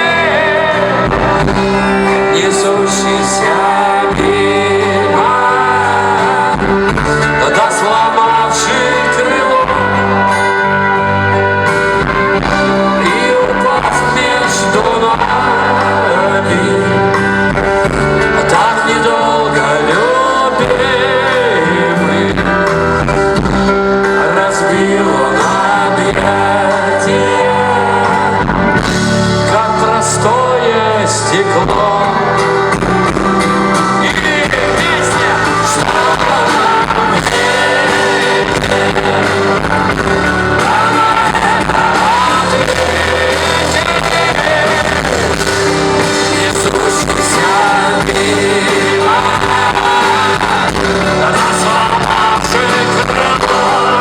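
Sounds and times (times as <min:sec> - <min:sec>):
live rock band playing: 0:00.0 - 0:54.0
person singing: 0:00.0 - 0:54.0.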